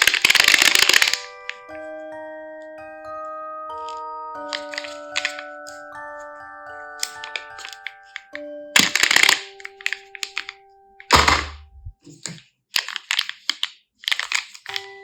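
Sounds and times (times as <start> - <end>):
small clicks: 0.0 - 1.6
crinkly packaging crackling: 0.0 - 1.8, 3.8 - 15.0.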